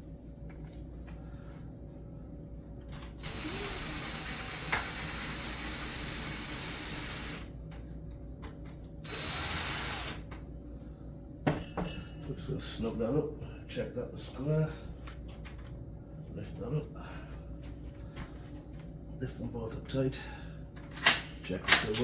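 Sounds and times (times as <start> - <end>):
drill driving screws: 3.2 - 7.5, 9.1 - 10.2.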